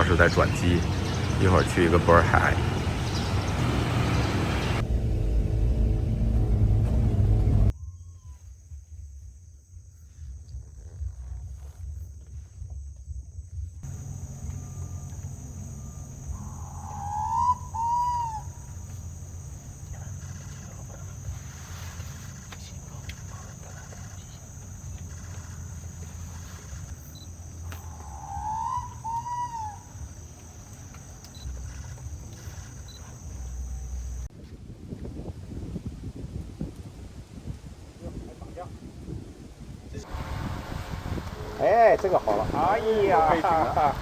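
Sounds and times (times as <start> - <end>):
bird calling: 0.0 - 4.8, 13.9 - 34.2, 41.4 - 44.0
steady low rumble: 0.0 - 7.8
constant high hiss: 8.5 - 34.4, 35.0 - 44.0.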